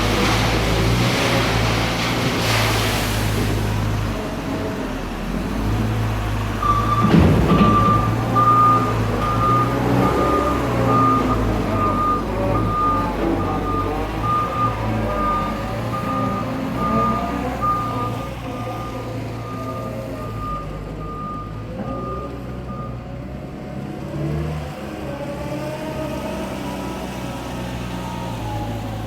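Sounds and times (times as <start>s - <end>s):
heavy vehicle engine running: 0.0s - 29.0s
reversing alarm beeping: 6.6s - 23.0s.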